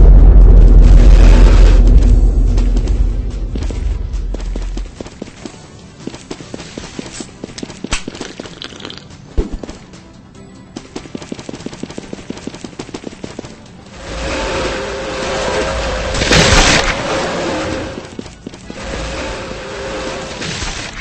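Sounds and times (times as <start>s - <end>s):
rapid clicking and crackling: 10.8s - 13.8s.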